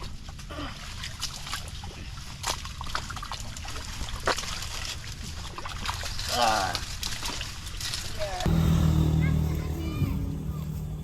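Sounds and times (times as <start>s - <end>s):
mud squelching and sloshing: 0.0s - 8.4s
low rumble: 8.5s - 11.0s.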